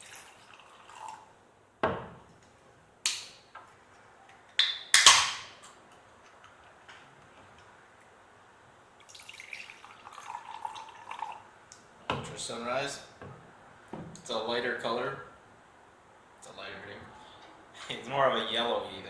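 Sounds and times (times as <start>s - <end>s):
drink pouring into a glass: 0.0s - 1.3s, 9.0s - 11.5s.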